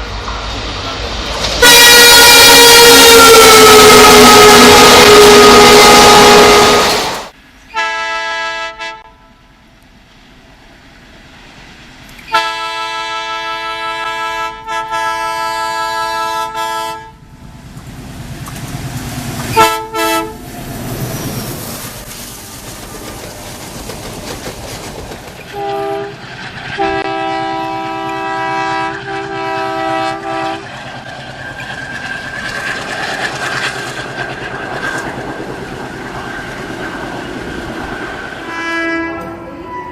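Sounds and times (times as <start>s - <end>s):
locomotive horn blasts: 1.6s - 9.5s, 12.3s - 17.2s, 19.5s - 20.5s, 25.5s - 26.2s, 26.8s - 30.6s, 38.5s - 39.9s
train wheel clatter: 17.6s - 39.9s.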